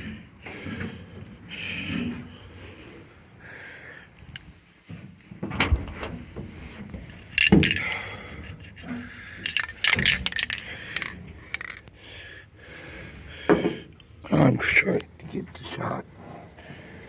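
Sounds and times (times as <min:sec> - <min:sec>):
sharp knocks and rattling clatters: 0:04.8 - 0:11.9.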